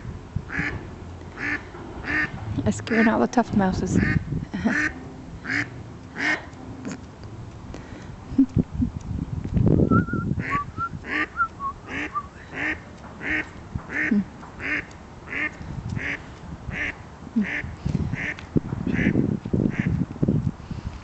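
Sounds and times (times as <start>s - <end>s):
duck quacking: 0.5s - 0.8s, 1.4s - 3.2s, 4.0s - 7.0s, 10.4s - 20.0s.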